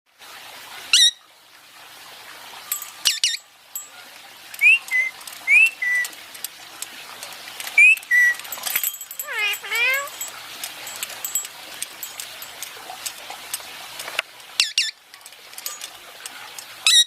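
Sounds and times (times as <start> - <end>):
parrot whistling: 3.0 - 3.4, 4.6 - 6.1, 7.8 - 8.4, 9.2 - 10.2.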